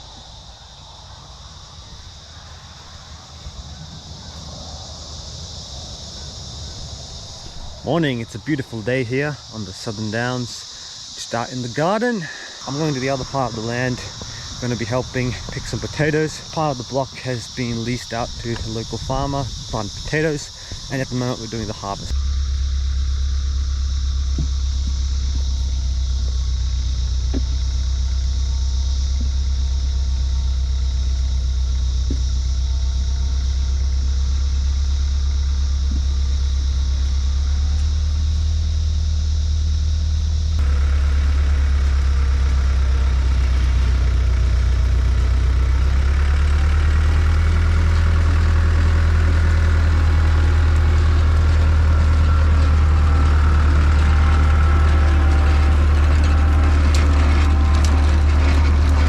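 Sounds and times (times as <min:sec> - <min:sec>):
farm machinery engine running: 0:01.5 - 0:59.0.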